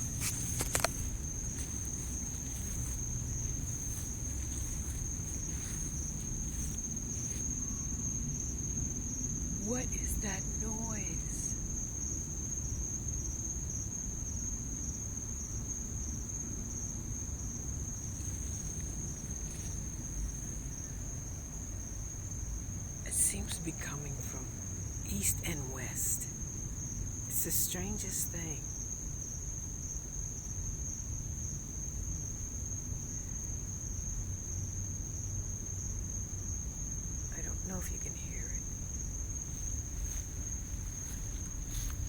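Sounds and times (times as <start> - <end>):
crickets trilling: 0.0 - 42.0
low night air hum: 0.0 - 42.0.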